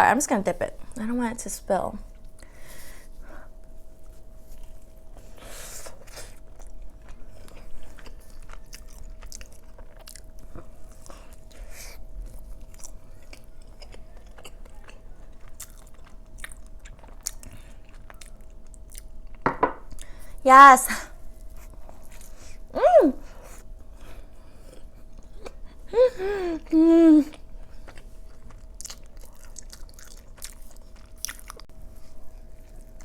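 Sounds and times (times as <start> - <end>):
biting and chewing: 4.1 - 20.2, 27.3 - 31.7.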